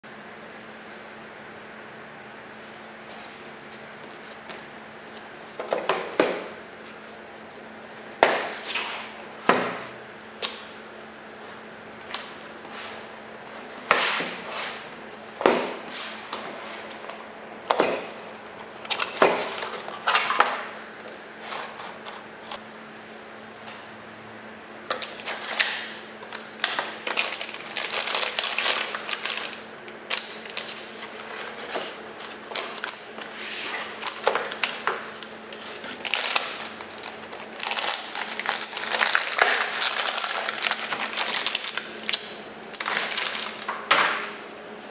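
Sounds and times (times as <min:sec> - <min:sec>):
steady low hum: 0:00.1 - 0:44.9
packaging rustling and knocks: 0:15.4 - 0:22.6, 0:24.9 - 0:44.2.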